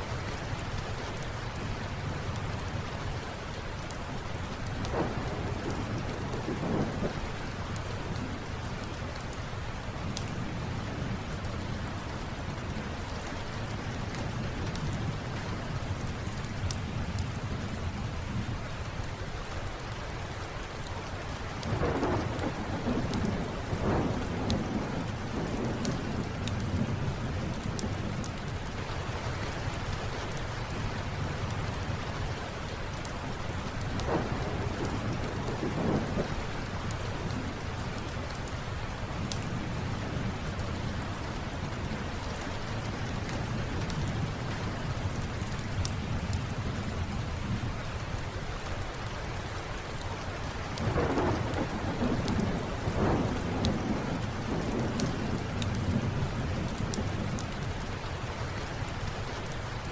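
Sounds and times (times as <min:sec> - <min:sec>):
steady rain: 0:00.0 - 0:59.9
thunder rolling: 0:04.9 - 0:07.4, 0:21.7 - 0:28.1, 0:33.9 - 0:36.4, 0:50.8 - 0:57.4.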